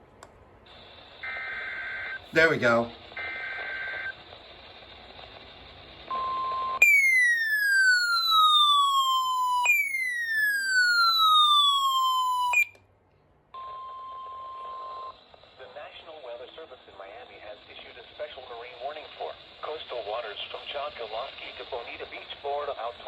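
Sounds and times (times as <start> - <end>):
digital header burst: 2.3 - 3.0, 6.3 - 8.9
electronic siren-like sweeps: 6.1 - 12.7.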